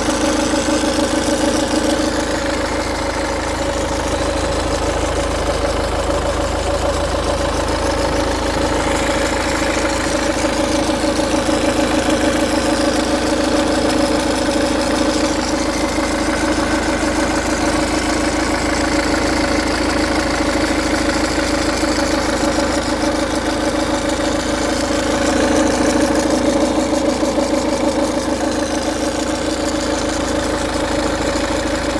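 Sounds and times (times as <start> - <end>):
diesel engine idling with rattle: 0.0 - 31.9.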